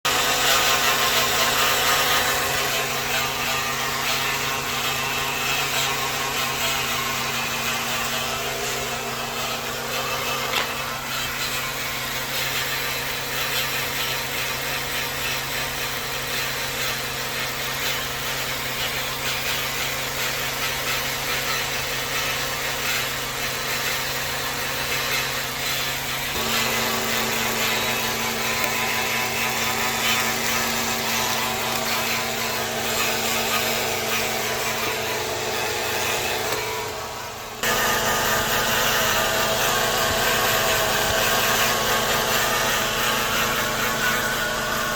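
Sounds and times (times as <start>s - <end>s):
car transmission whining: 26.2s - 38.5s.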